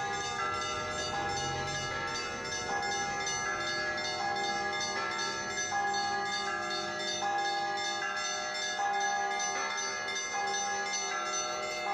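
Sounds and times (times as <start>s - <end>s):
church bells ringing: 0.0s - 11.9s.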